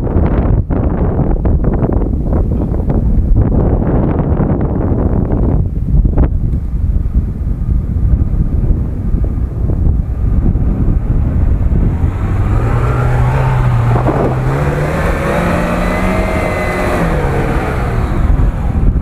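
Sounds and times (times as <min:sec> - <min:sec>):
wind rumble on microphone: 0:00.0 - 0:19.0
car engine revving: 0:10.0 - 0:19.0.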